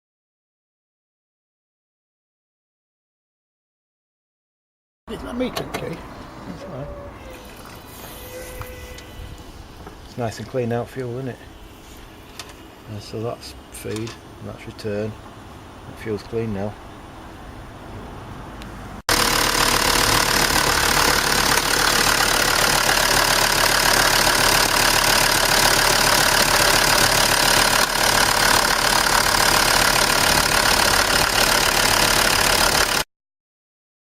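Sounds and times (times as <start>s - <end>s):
diesel engine idling: 18.6s - 33.0s.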